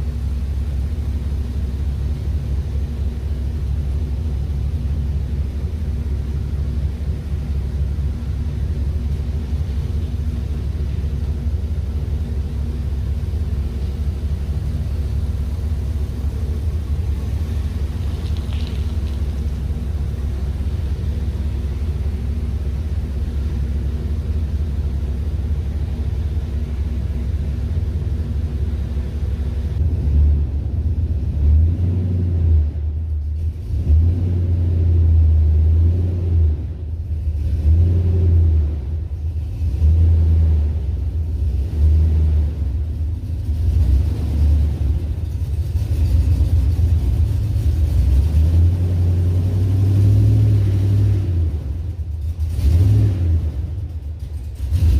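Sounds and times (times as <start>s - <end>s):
vehicle engine revving: 29.6s - 54.9s.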